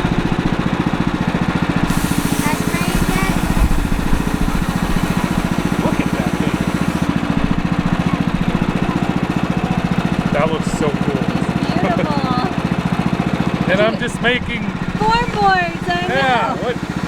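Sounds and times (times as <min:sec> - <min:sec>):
gasoline engine running: 0:00.0 - 0:17.0
band saw blade cutting log: 0:01.0 - 0:08.9, 0:14.4 - 0:17.0.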